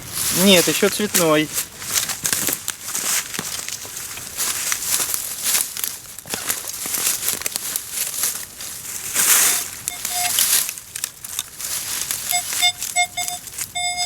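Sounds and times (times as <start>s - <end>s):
digging in soil: 0.0s - 14.0s
twigs and roots crackling: 0.0s - 14.0s
metal detector beeps: 9.4s - 10.5s, 12.2s - 14.0s.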